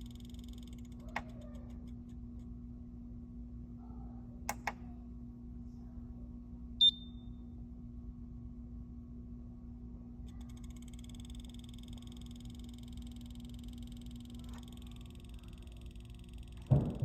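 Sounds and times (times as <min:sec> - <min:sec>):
steady low hum: 0:00.0 - 0:17.0
short high-pitched beep: 0:06.8 - 0:07.2.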